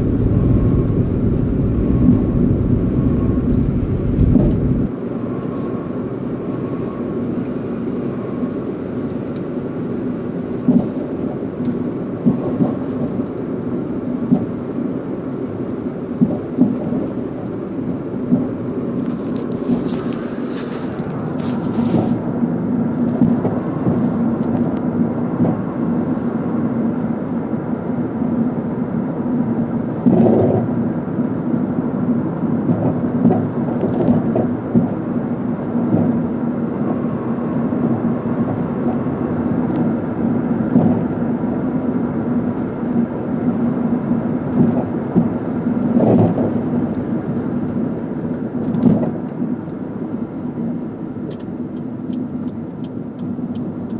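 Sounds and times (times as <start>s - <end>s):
clatter: 0.0s - 4.9s, 30.0s - 30.7s, 48.4s - 49.3s
suspension knocks: 0.0s - 4.9s
car road and engine noise: 0.0s - 53.9s.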